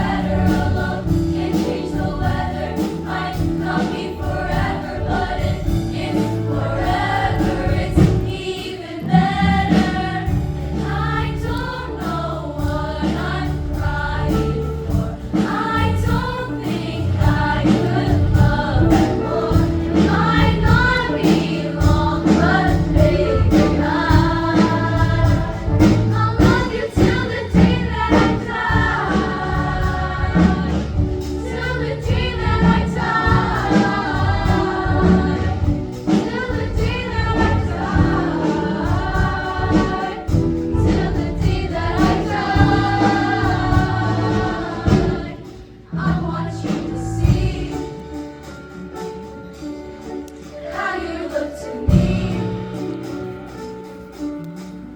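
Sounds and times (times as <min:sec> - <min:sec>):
choir singing with beat: 0:00.0 - 0:48.6, 0:50.4 - 0:54.2.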